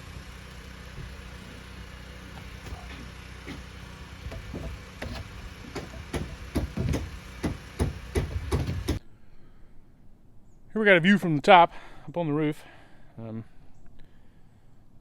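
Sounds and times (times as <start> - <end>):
low engine hum: 0.0 - 9.0
hammer blows on wood: 2.4 - 9.0.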